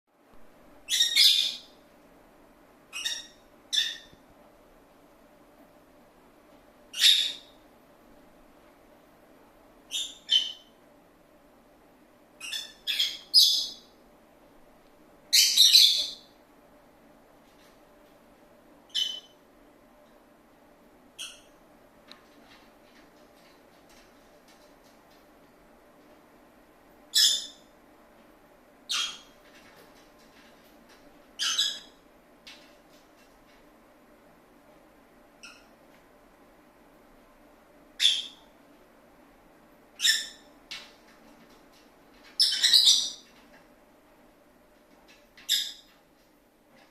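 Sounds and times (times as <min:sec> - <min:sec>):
lovebird chirping: 0:00.8 - 0:01.8, 0:02.9 - 0:04.2, 0:06.9 - 0:07.6, 0:09.9 - 0:10.7, 0:12.4 - 0:13.9, 0:15.3 - 0:16.3, 0:18.9 - 0:19.4, 0:21.2 - 0:21.5, 0:27.1 - 0:27.7, 0:28.9 - 0:29.3, 0:31.4 - 0:32.0, 0:38.0 - 0:38.5, 0:40.0 - 0:40.5, 0:42.4 - 0:43.2, 0:45.5 - 0:45.9.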